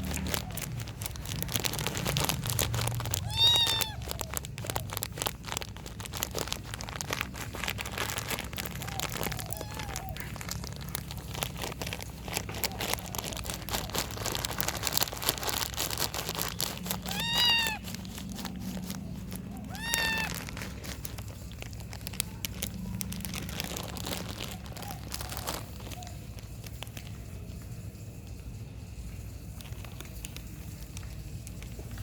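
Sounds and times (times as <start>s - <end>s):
crinkling and clicking: 0.0s - 32.0s
kitten meowing: 3.0s - 4.8s, 8.9s - 10.4s, 16.8s - 21.0s.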